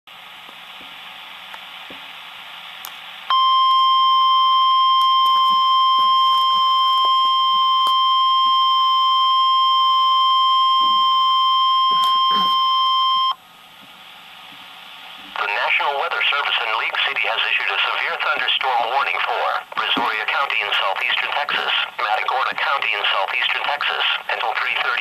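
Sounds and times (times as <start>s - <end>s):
radio static hiss: 0.1s - 25.0s
steady high alarm tone: 3.3s - 13.4s.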